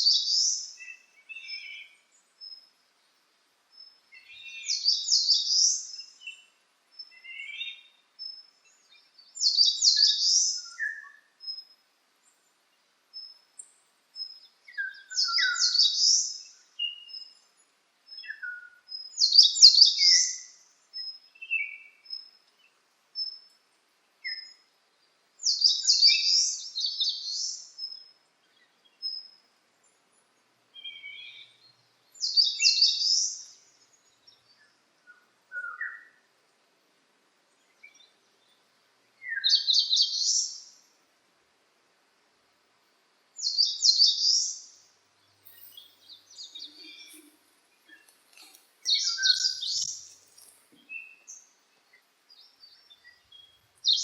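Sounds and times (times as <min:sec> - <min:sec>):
lower bird chirps: 0:00.0 - 0:02.8, 0:03.7 - 0:12.5, 0:13.1 - 0:23.6, 0:24.2 - 0:36.4, 0:37.5 - 0:40.9, 0:43.4 - 0:54.0
songbird singing high phrase: 0:14.2 - 0:17.4, 0:30.7 - 0:36.2, 0:43.4 - 0:54.0
thin high bird notes: 0:45.4 - 0:50.8.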